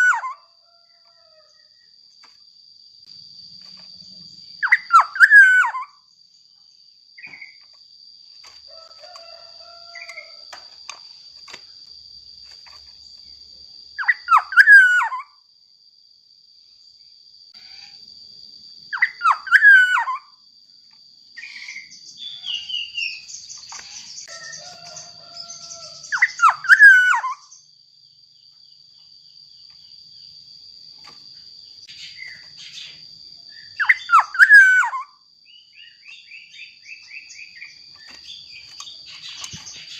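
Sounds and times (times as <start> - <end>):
bird singing fluty whistles: 0.0 - 0.4, 4.6 - 6.0, 14.0 - 15.3, 19.0 - 20.3, 21.4 - 27.6, 31.9 - 39.9.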